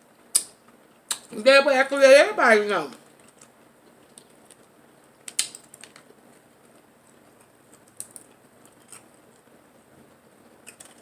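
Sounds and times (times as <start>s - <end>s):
crab shell cracking: 3.2s - 6.1s, 7.4s - 9.5s, 10.6s - 11.0s.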